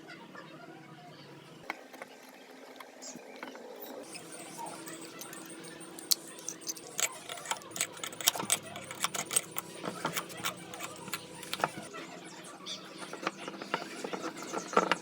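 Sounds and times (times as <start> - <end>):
small hard objects clicking: 4.1 - 11.9.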